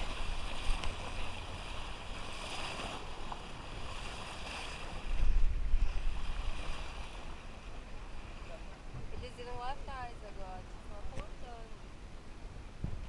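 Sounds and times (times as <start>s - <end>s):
water splashing around boat hull: 0.0s - 13.0s
wind on microphone: 0.0s - 13.0s.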